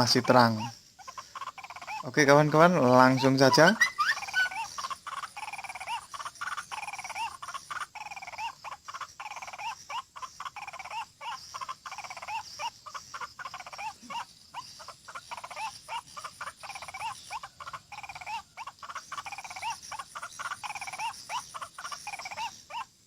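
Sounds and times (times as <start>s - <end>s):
waterhen calling harsh notes: 0.0s - 10.6s
steady high hiss: 0.0s - 23.0s.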